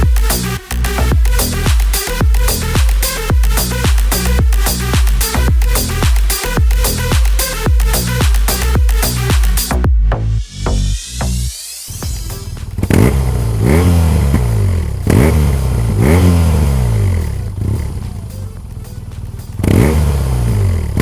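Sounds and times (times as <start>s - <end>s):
motorcycle engine idling: 0.0s - 10.0s, 12.0s - 21.0s.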